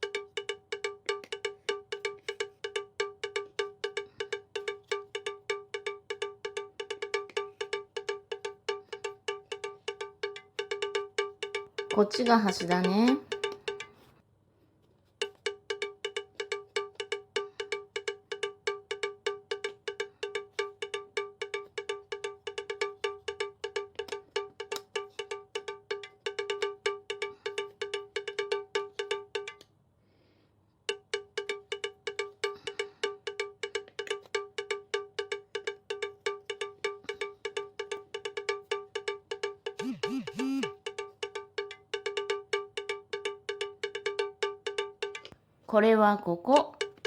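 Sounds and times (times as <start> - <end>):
bell-like percussion music: 8.4 - 13.9, 39.8 - 40.7.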